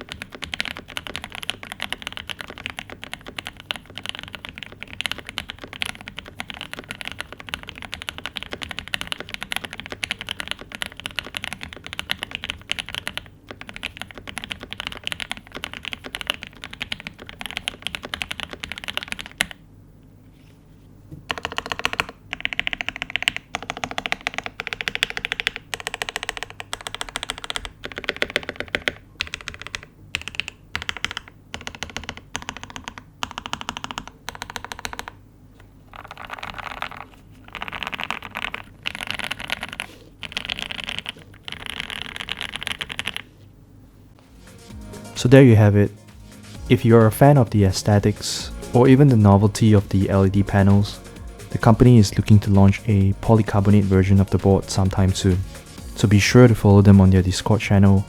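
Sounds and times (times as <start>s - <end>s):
mechanical keyboard typing: 0.0s - 19.6s, 21.3s - 35.2s, 35.9s - 43.3s.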